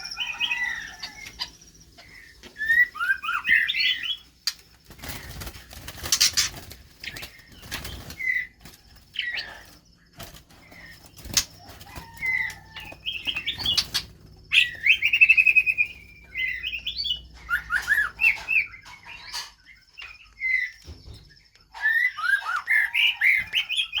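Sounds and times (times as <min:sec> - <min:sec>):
bird trilling: 0:00.0 - 0:20.8
bird chirps and calls: 0:00.0 - 0:24.0
wings fluttering and flapping: 0:02.5 - 0:16.9.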